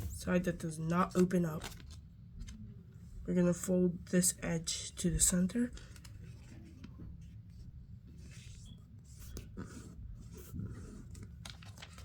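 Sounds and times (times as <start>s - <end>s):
paper rustling and crinkling: 1.1s - 2.6s, 8.2s - 12.0s.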